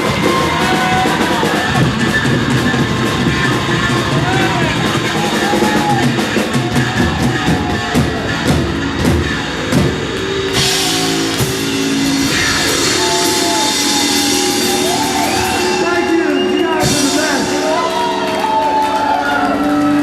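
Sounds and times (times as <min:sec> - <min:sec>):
drums: 0:00.0 - 0:20.0
electric guitar: 0:00.0 - 0:20.0
ringing cymbal wash: 0:09.4 - 0:18.4.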